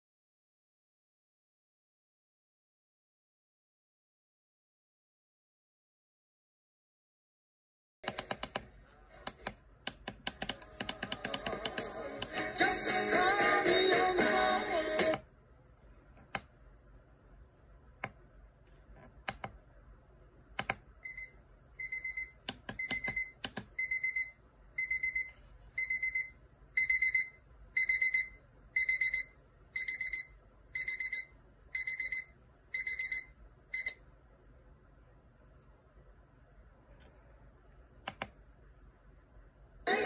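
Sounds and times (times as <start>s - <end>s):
alarm clock beeping: 21.0s - 34.0s.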